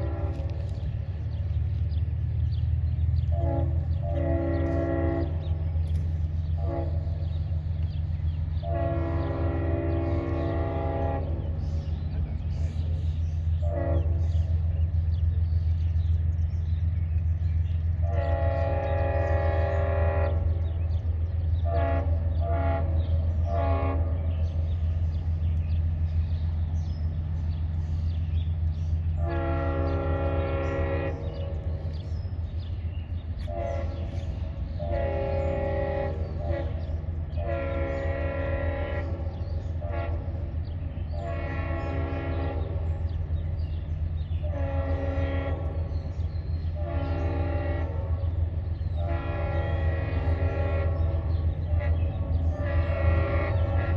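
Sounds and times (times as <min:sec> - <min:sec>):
locomotive air horn blasts: 0:00.0 - 0:00.8, 0:03.2 - 0:07.5, 0:08.5 - 0:11.6, 0:13.6 - 0:14.7, 0:18.0 - 0:21.0, 0:21.6 - 0:25.1, 0:29.1 - 0:32.4, 0:33.2 - 0:53.9
low rumble of passing train: 0:00.0 - 0:53.9.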